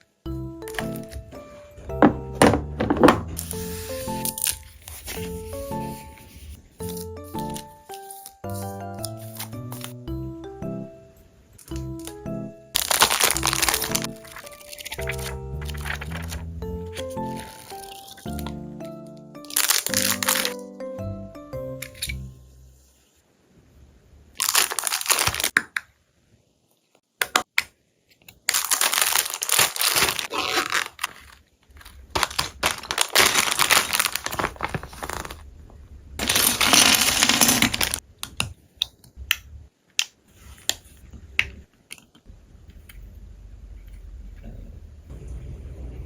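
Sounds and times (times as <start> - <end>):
packaging crinkling: 2.6 - 8.4, 12.8 - 18.5, 19.4 - 20.6, 24.4 - 25.6, 28.4 - 35.5, 36.2 - 38.0.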